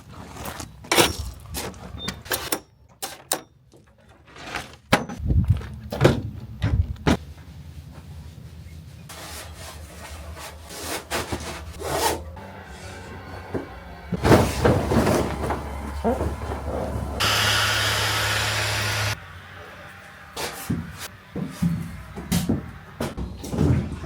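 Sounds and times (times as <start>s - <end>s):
rubbing and scraping: 8.1s - 12.4s.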